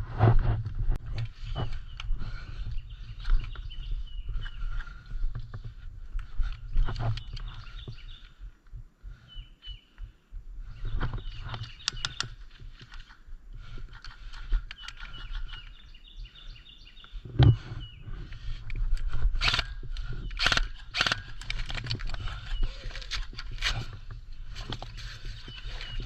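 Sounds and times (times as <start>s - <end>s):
birds chirping: 1.0s - 26.0s
clicks and rustles: 11.0s - 15.9s, 18.2s - 26.0s.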